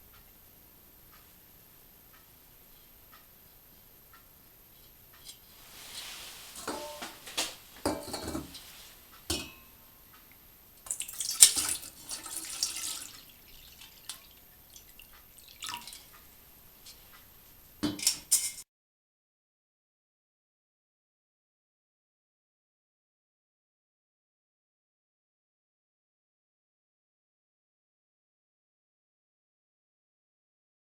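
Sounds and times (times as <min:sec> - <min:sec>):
metal pot clinking: 0:06.6 - 0:09.8, 0:10.8 - 0:17.2, 0:17.8 - 0:18.6
water splashing and dripping: 0:10.8 - 0:17.0.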